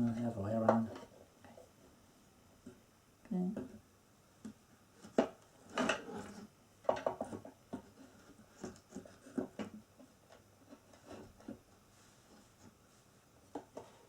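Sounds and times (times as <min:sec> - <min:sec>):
chair parts knocking and rattling: 0:05.0 - 0:11.6.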